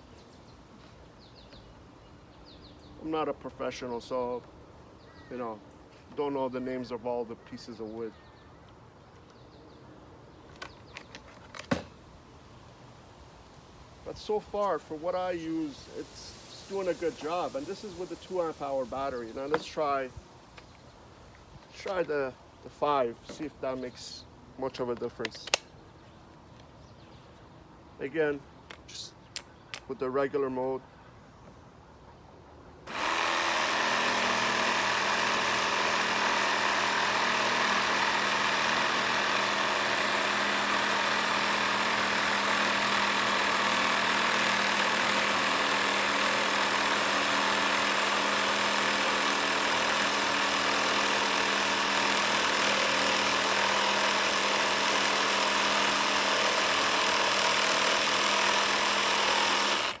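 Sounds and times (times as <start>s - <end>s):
jigsaw sawing through wood: 16.6s - 19.7s, 32.9s - 60.0s.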